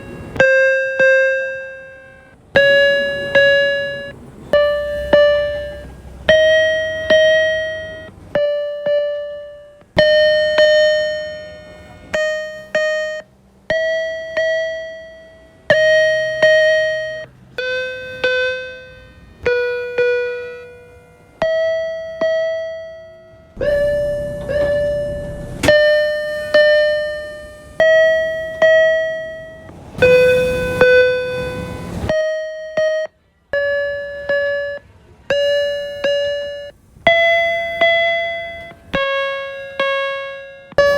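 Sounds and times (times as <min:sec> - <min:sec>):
electronic door chime: 0:00.0 - 0:40.9
train and station background noise: 0:00.0 - 0:40.9.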